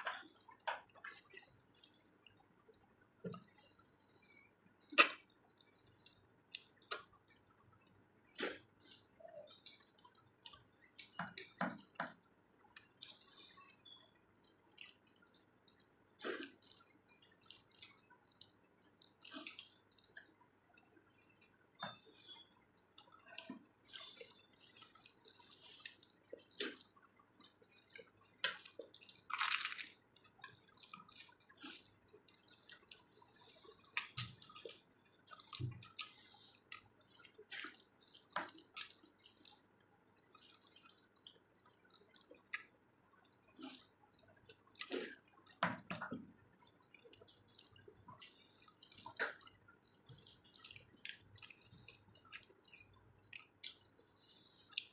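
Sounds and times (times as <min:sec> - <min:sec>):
wet chewing and mouth smacking: 0:00.1 - 0:54.9.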